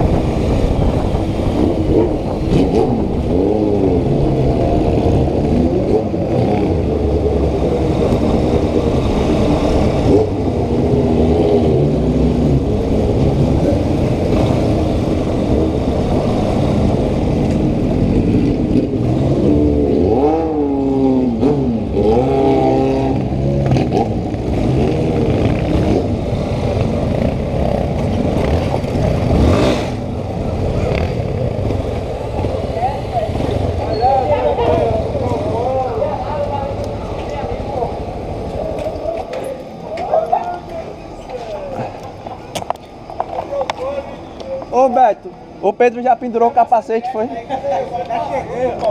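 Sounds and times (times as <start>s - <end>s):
motorcycle engine revving: 0.0s - 38.8s.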